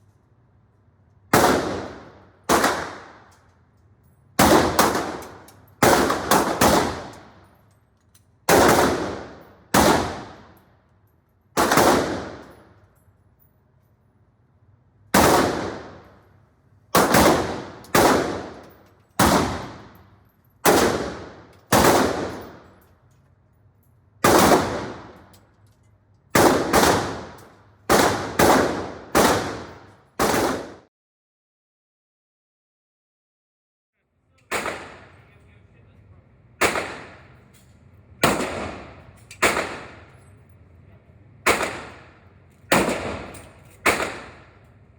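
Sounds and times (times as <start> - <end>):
gunshots with echoing tail: 1.4 - 3.3, 4.4 - 7.4, 8.5 - 10.6, 11.6 - 12.7, 15.2 - 16.1, 17.0 - 20.0, 20.6 - 22.8, 24.2 - 25.3, 26.4 - 30.9, 34.5 - 35.2, 36.6 - 37.4, 38.2 - 40.2, 41.4 - 44.6.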